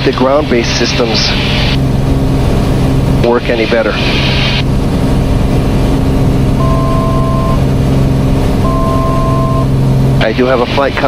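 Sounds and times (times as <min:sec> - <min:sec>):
airplane engine droning: 0:00.0 - 0:11.0
two-note electronic beeps: 0:06.6 - 0:07.6, 0:08.6 - 0:09.7.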